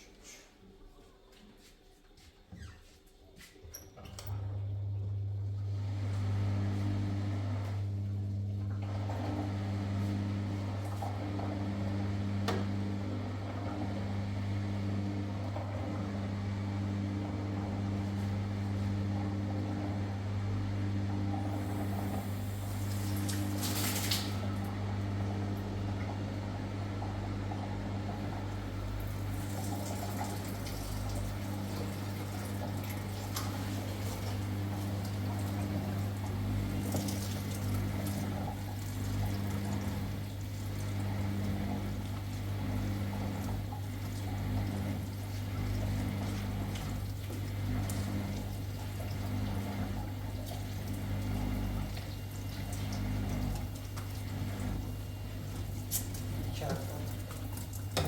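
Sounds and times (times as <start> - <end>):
low machine hum: 3.6 - 58.0
water running and splashing: 22.0 - 24.4, 29.0 - 41.0, 55.5 - 58.0.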